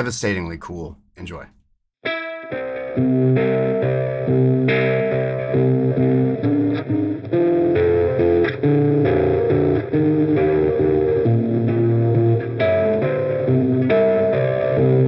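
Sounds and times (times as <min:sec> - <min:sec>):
distorted electric guitar: 0:02.5 - 0:15.0.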